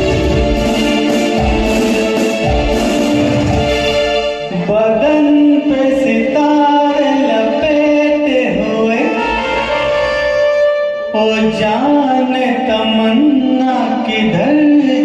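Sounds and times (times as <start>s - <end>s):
film song backing track: 0.0s - 11.3s.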